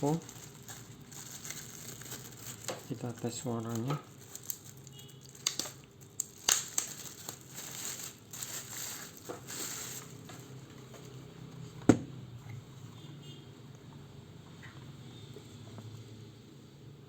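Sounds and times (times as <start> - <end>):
packaging crinkling: 0.0 - 10.7.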